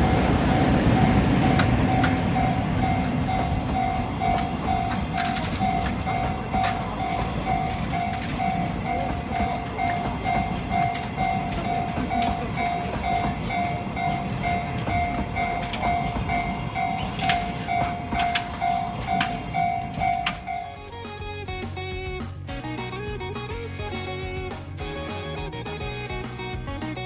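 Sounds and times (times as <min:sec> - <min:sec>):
wheels clicking over rail joints: 0:00.0 - 0:20.8
level-crossing alarm dinging: 0:00.0 - 0:20.9
train rumbling: 0:00.0 - 0:21.0.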